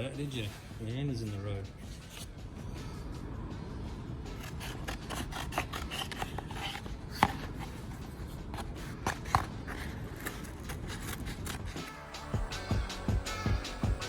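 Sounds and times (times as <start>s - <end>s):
gasket material scraping: 4.3s - 12.3s.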